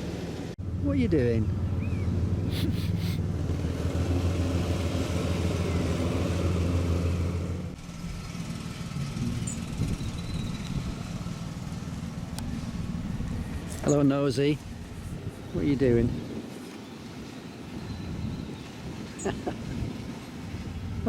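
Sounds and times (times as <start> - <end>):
lawn mower engine running: 0.0 - 13.8.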